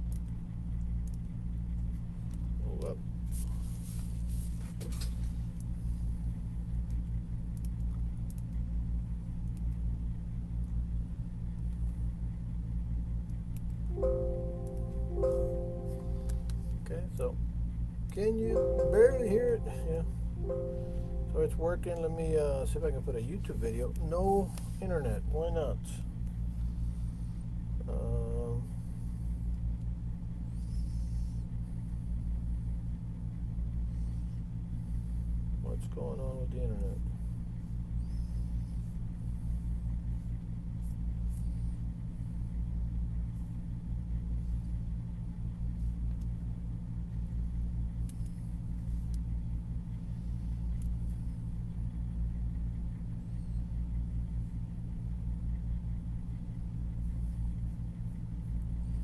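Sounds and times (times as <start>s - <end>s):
steady low hum: 0.0s - 59.0s
held musical notes from speakers: 13.9s - 16.6s, 18.3s - 21.6s.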